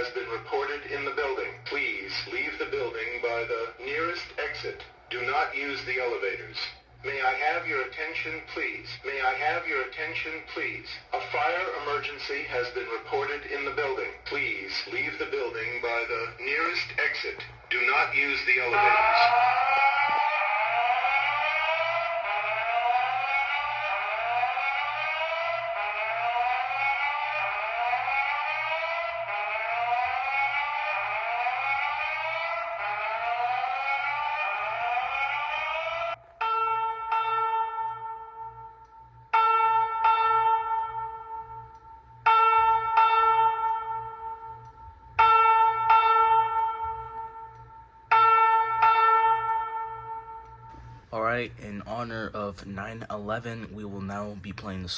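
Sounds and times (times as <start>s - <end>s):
chime-like ringing alarm tone: 9.1s - 52.0s
rising whoop alarm tone: 17.8s - 38.8s.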